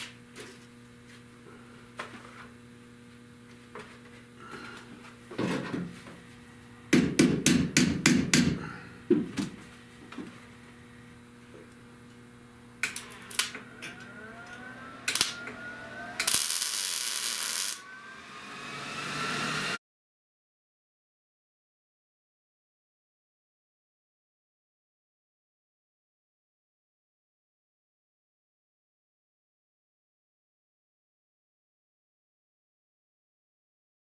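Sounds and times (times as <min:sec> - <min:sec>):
rising whine: 0:10.8 - 0:19.8.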